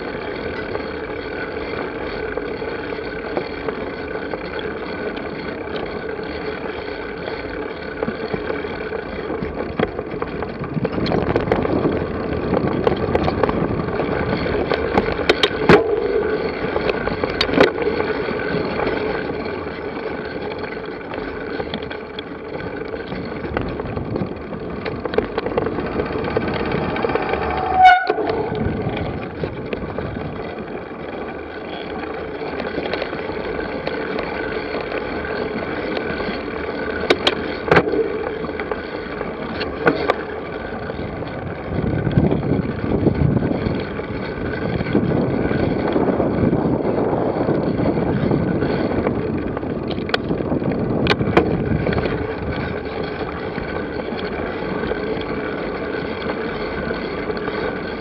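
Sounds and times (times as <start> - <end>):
bicycle rolling rumble: 0.0 - 58.0
clicks and rattles: 0.0 - 58.0
wind on microphone: 23.3 - 30.6, 40.8 - 53.9.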